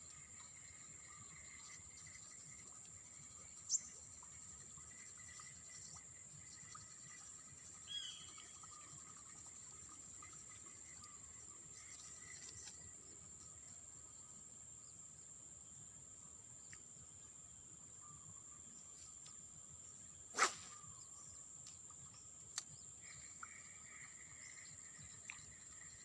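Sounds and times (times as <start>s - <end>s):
high insect drone: 0.0s - 26.0s
faint ticks: 16.6s - 17.0s, 19.0s - 19.4s, 21.6s - 26.0s.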